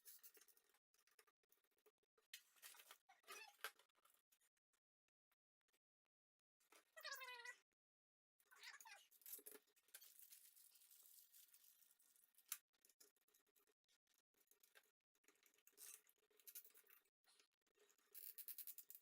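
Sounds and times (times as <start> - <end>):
small clicks of parts handled: 9.1 - 11.5, 17.9 - 19.0.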